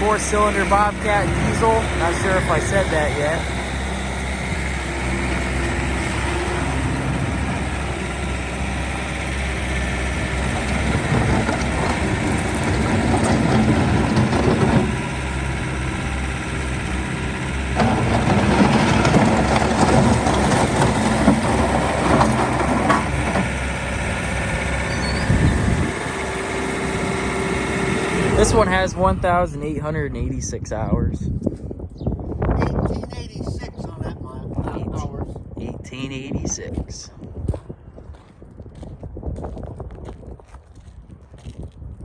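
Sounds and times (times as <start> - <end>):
rattling and clanking: 0.0 - 28.8
skid steer diesel engine running: 0.0 - 30.4.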